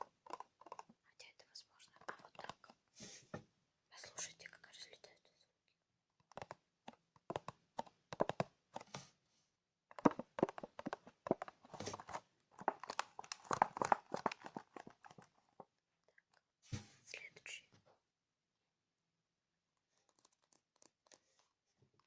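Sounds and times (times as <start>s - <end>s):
rapid taps and clicks: 6.3s - 8.9s, 9.9s - 15.3s.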